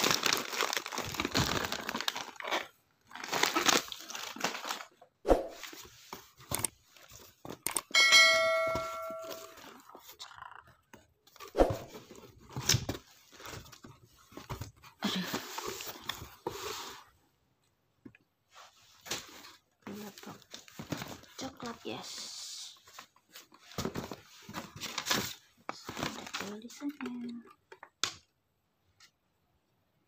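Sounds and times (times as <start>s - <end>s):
packaging rustling and tearing: 0.0s - 7.6s, 23.0s - 27.0s
pitched ringing tone: 8.0s - 9.7s.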